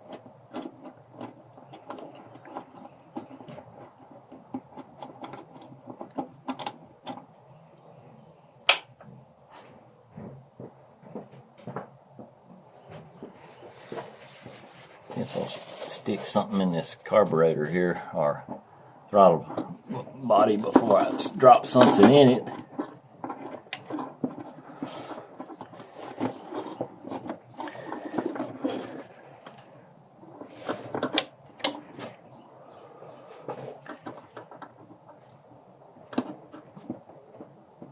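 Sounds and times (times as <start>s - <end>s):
rubbing and rustling: 0.0s - 7.9s, 9.1s - 18.6s, 19.5s - 37.9s
hand tools clicking and knocking: 20.6s - 29.7s, 30.3s - 32.2s.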